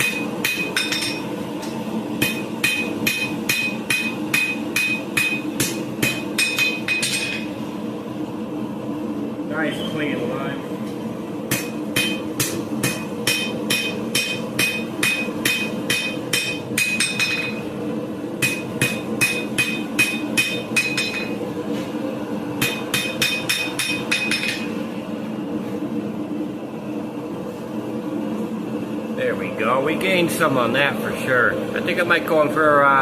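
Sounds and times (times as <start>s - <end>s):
hammer striking steel on anvil: 0.0s - 7.5s, 11.5s - 17.7s, 18.4s - 21.4s, 22.6s - 24.7s
steady low hum: 0.0s - 33.0s.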